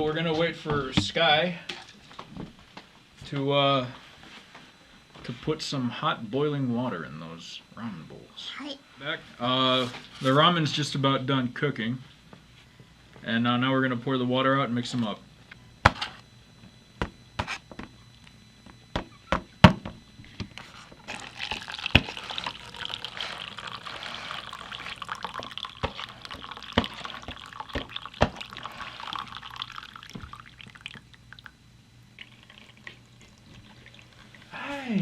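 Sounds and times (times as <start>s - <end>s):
water pouring and splashing: 21.0s - 31.0s.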